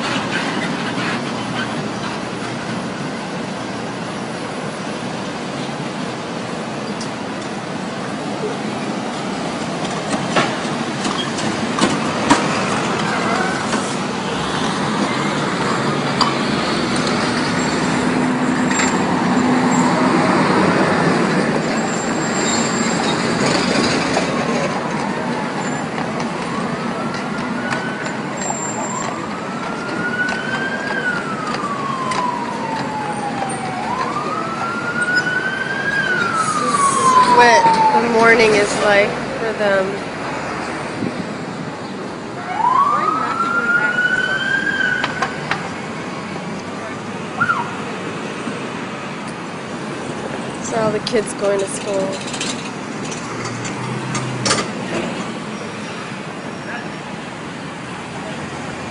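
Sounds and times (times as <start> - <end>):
street traffic rumble: 0.0 - 58.9
big vehicle passing: 7.2 - 58.9
emergency siren wailing: 7.6 - 40.1, 41.4 - 53.2.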